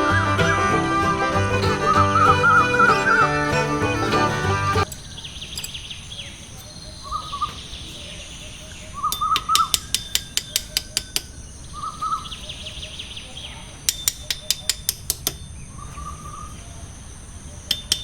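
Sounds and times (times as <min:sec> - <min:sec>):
background music: 0:00.0 - 0:04.9
birds chirping and warbling: 0:01.6 - 0:18.0.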